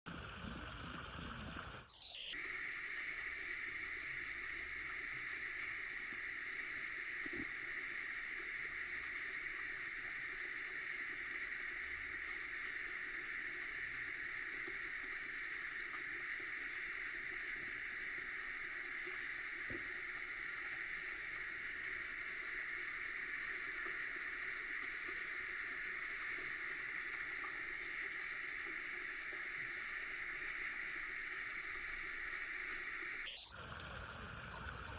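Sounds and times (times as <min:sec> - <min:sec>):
steady outdoor hiss: 0:00.1 - 0:02.0, 0:33.3 - 0:34.9.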